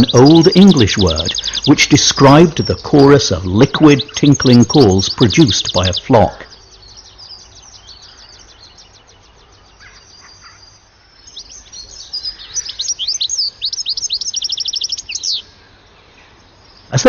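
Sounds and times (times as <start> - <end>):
finches twittering: 0.0 - 17.0.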